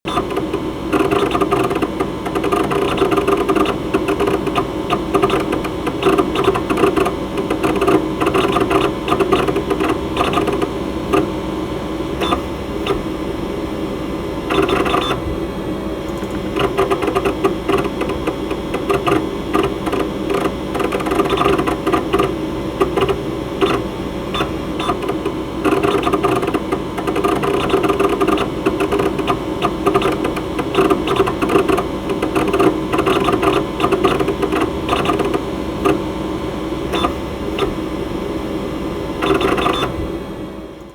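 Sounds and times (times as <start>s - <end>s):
hard drive heads clicking: 0.1s - 11.3s, 16.1s - 36.0s
hard drive hum: 0.1s - 40.9s.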